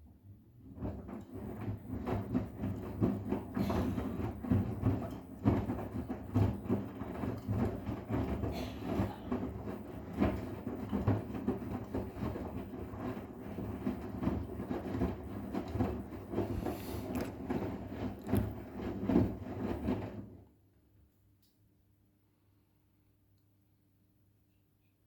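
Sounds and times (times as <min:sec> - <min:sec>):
washing machine drum churning: 0:00.5 - 0:20.5.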